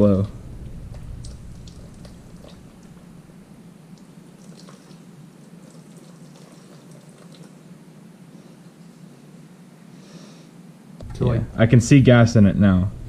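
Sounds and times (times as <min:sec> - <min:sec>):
steady low hum: 0:00.0 - 0:13.0
fuel trickling and dripping: 0:00.8 - 0:03.1, 0:03.9 - 0:07.7.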